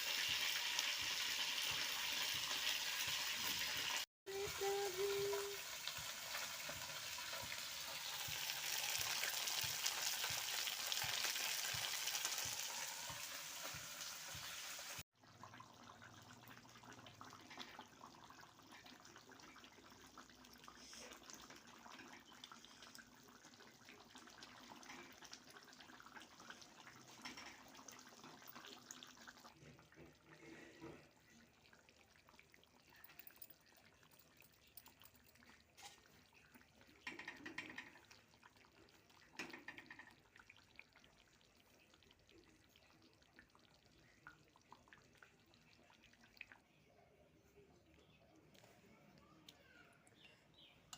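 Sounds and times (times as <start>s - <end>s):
food sizzling in oil: 0.0s - 15.9s.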